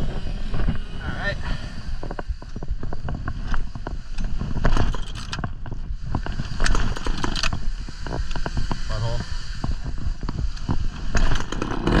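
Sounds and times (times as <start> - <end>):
wind buffeting microphone: 0.0 - 12.0
snaps and crackles: 10.2 - 12.0.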